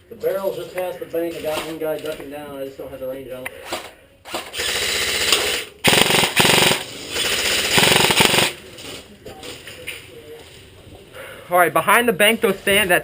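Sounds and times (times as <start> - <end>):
airsoft gun full-auto bursts: 4.5 - 8.6.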